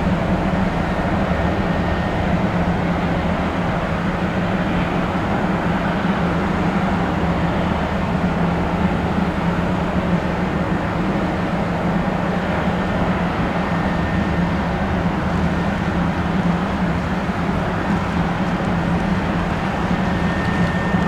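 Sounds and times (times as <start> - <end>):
jet engines running: 12.3 - 21.0.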